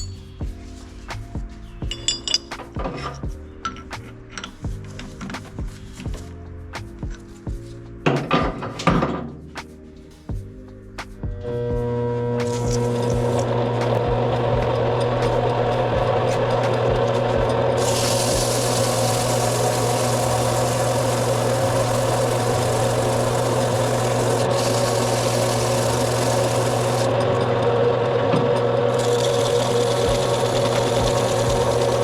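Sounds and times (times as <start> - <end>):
power tool motor humming: 11.4 - 32.0
metal grinding hiss: 12.4 - 14.1, 14.7 - 27.2, 28.6 - 32.0.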